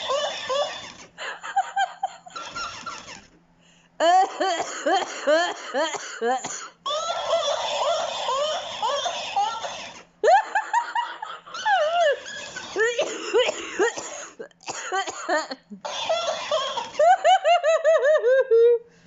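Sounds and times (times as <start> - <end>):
person laughing: 0.0 - 3.1, 7.1 - 14.0, 15.0 - 18.9
person coughing: 4.0 - 6.8, 12.7 - 17.0.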